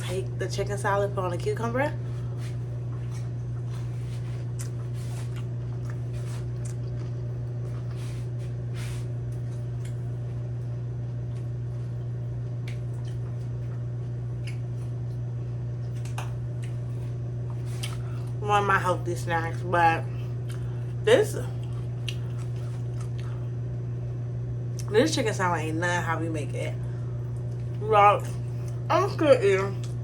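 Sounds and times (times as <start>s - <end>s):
low electrical hum: 0.0s - 30.0s
wet squishes of food being eaten: 2.2s - 10.4s, 11.1s - 18.4s, 20.3s - 23.5s, 27.2s - 27.8s.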